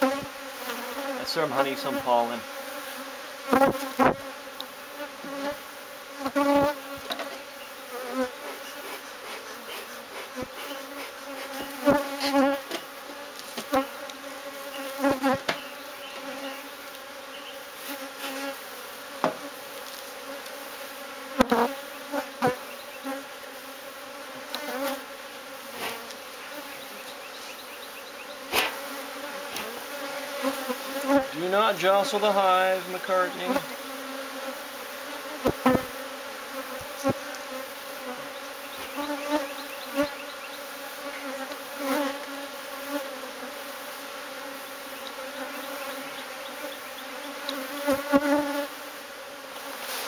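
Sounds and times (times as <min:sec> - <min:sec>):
bees buzzing: 0:00.0 - 0:50.0.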